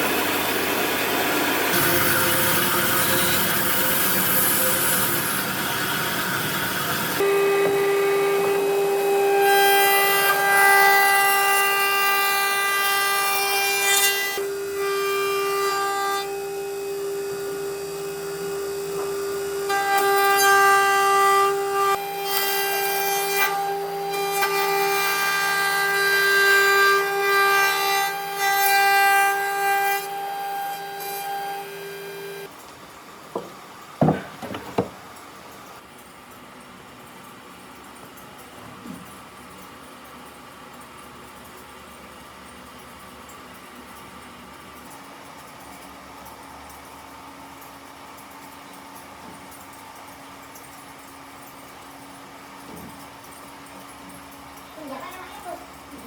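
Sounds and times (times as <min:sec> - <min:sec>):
power tool cutting wood: 0:00.0 - 0:32.5.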